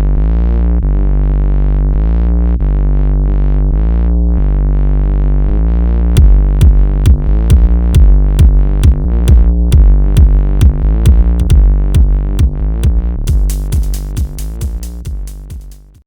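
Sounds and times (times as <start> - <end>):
synthesizer chord with filter sweep: 0.0 - 16.0
drum machine beats: 6.2 - 16.0.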